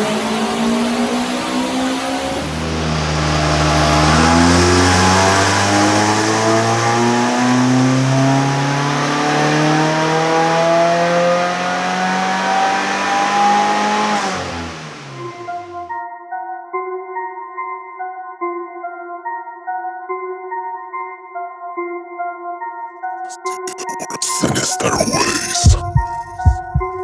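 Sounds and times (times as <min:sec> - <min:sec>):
car engine revving: 0:00.0 - 0:15.9.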